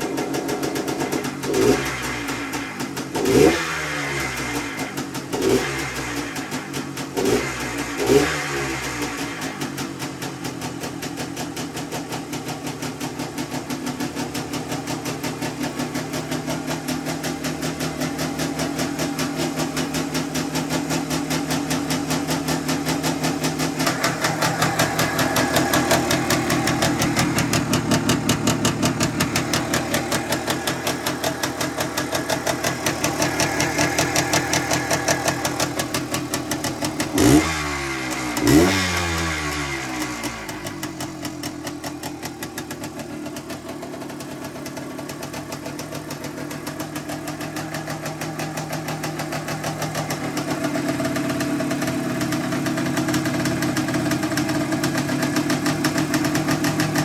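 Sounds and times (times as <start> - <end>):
engine revving: 0.0 - 9.9, 14.3 - 57.0
two-stroke motorcycle engine idling: 0.0 - 57.0.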